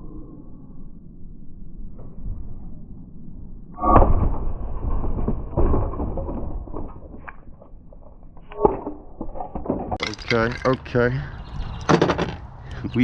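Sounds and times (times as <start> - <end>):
metal clanking and rattling: 4.0 - 11.1, 11.7 - 12.4.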